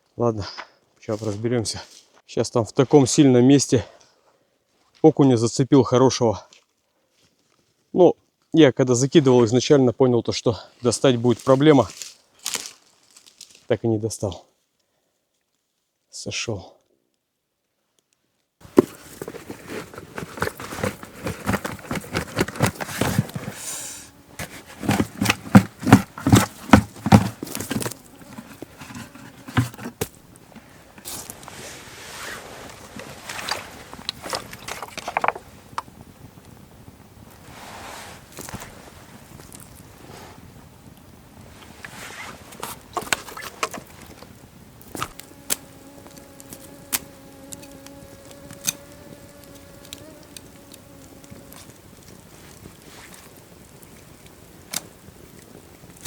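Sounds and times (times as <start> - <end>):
flying insect buzzing: 22.5 - 29.8, 44.9 - 51.9
footsteps knocking: 24.4 - 30.1.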